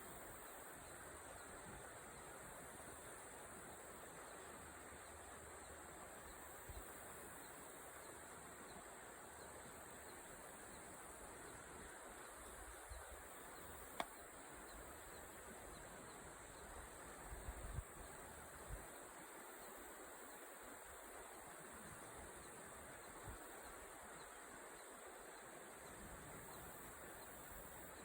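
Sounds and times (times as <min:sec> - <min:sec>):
insect chirping: 0:00.0 - 0:28.0
sharp click: 0:14.0 - 0:14.2.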